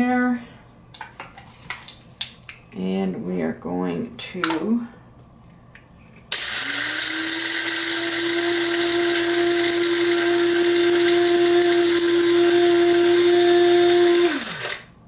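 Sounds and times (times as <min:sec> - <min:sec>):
coffee grinder motor whine: 0:06.3 - 0:15.0.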